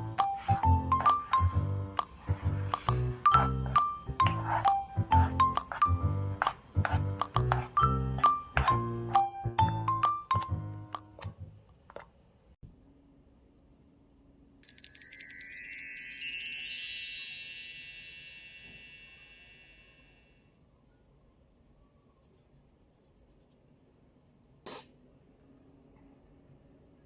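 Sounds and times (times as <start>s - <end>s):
light tune: 0.0s - 11.4s
chime glissando sweeping downward: 14.6s - 20.3s.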